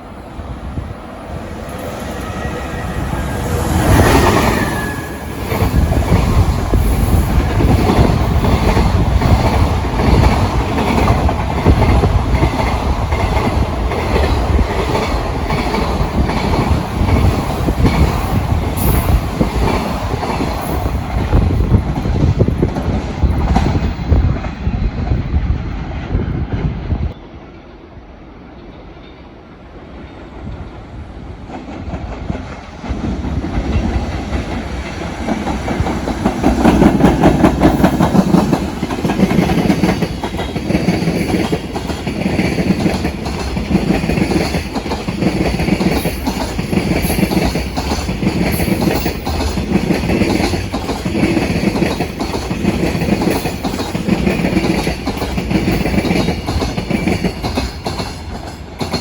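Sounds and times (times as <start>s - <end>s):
electric locomotive passing: 0.0s - 59.0s
wagon wheels clacking over rail joints: 31.5s - 59.0s.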